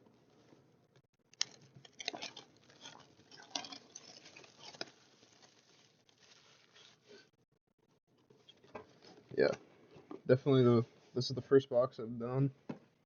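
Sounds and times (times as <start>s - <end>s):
packaging rustling and crinkling: 1.4s - 7.3s.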